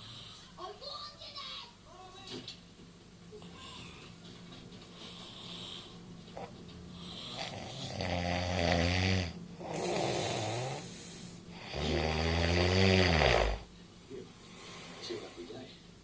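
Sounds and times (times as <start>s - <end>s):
person snoring: 5.3s - 13.7s.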